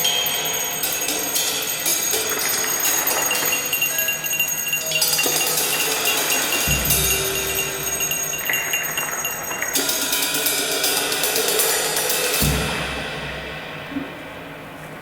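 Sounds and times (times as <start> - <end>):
cymbals and metal percussion shimmer: 0.0 - 14.9
deep drum strokes: 6.6 - 9.5.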